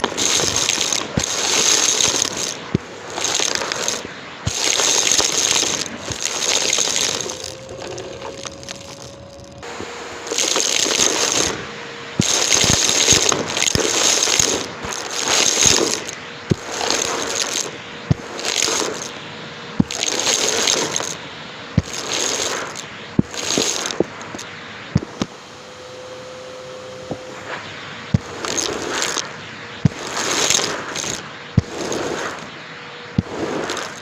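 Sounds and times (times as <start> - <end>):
vacuum suction hiss: 0.0 - 34.0.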